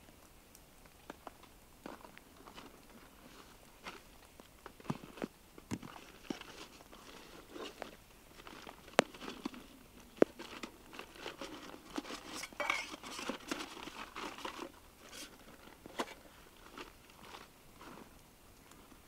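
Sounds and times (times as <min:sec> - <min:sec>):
plastic packaging crinkling: 0:05.8 - 0:18.1.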